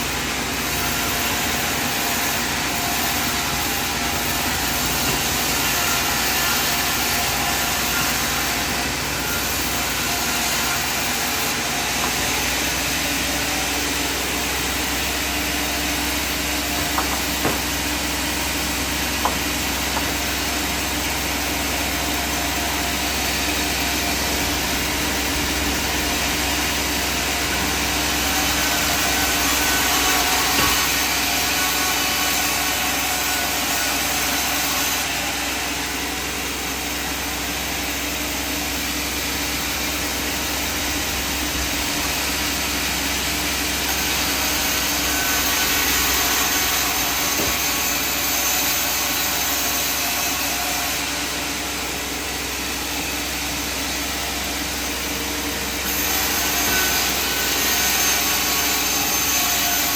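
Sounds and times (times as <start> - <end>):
sawmill machinery drone: 0.0 - 59.9.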